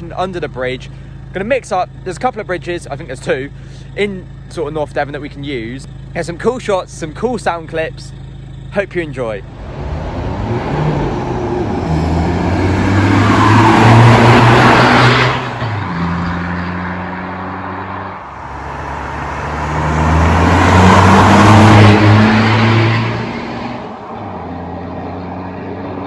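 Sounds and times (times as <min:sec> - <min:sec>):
diesel engine accelerating hard: 0:00.0 - 0:26.0
exhaust roar: 0:07.9 - 0:26.0.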